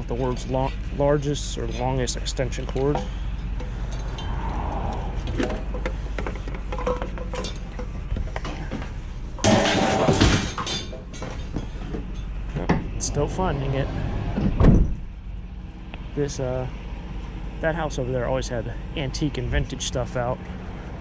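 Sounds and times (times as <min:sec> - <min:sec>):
scrap metal clinking and clattering: 0:00.0 - 0:04.5, 0:05.2 - 0:08.8, 0:09.4 - 0:12.6
vehicle idling rumble: 0:00.0 - 0:09.9
items thrown down clattering: 0:09.4 - 0:11.7.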